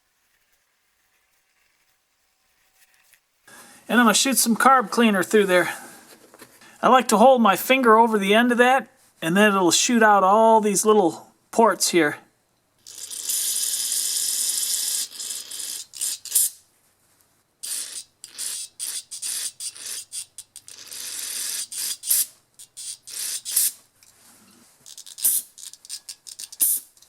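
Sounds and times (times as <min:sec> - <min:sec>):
aerosol spray hissing: 0:21.5 - 0:23.8, 0:26.4 - 0:27.0.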